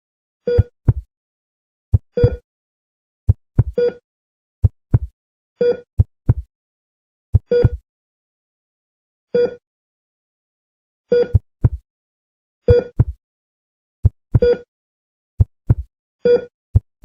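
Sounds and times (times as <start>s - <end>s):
heart monitor beep: 0.5s - 1.1s, 1.9s - 2.5s, 3.3s - 4.0s, 4.6s - 6.5s, 7.3s - 7.8s, 9.4s - 9.6s, 11.1s - 11.8s, 12.7s - 13.2s, 14.0s - 14.7s, 15.4s - 16.9s
heartbeat thumps: 0.6s - 1.1s, 1.9s - 2.4s, 3.3s - 3.8s, 4.6s - 5.1s, 6.0s - 6.5s, 7.3s - 7.8s, 11.3s - 11.8s, 12.7s - 13.2s, 14.0s - 14.5s, 15.4s - 15.9s.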